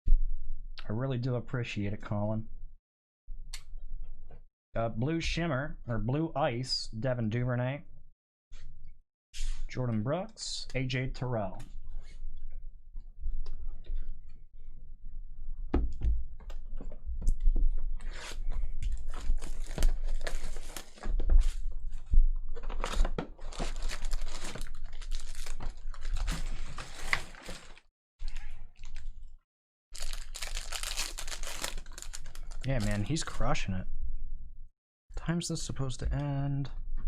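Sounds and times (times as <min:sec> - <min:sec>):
foil wrapper crinkling and tearing: 0:18.9 - 0:21.0, 0:22.6 - 0:29.1, 0:30.0 - 0:33.2.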